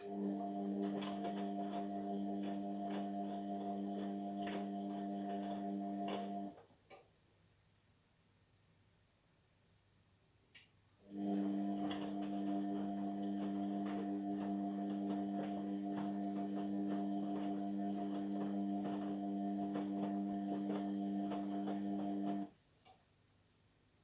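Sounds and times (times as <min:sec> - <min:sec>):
washing machine humming: 0:00.0 - 0:06.6, 0:11.0 - 0:22.6.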